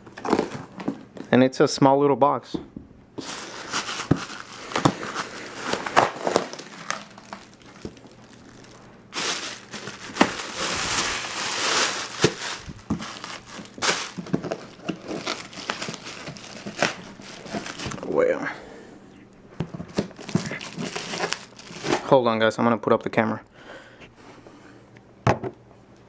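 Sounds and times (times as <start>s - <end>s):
packing material crinkling: 3.7s - 18.1s.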